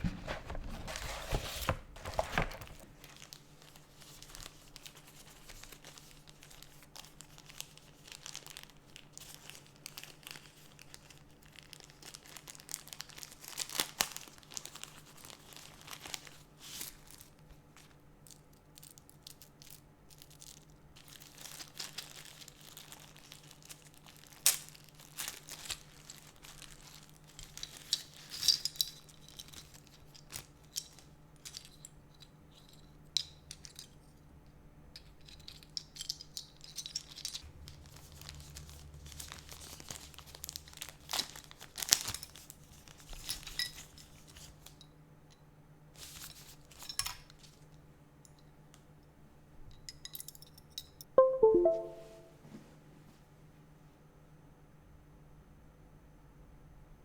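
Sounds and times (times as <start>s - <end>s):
packaging crinkling and rustling: 0.0s - 31.8s, 36.4s - 44.0s.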